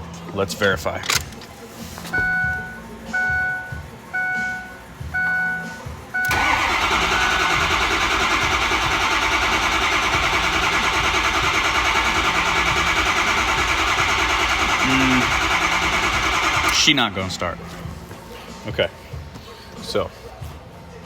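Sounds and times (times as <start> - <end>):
dashboard chimes: 2.1 - 6.5
engine cranking by starter: 5.2 - 17.2.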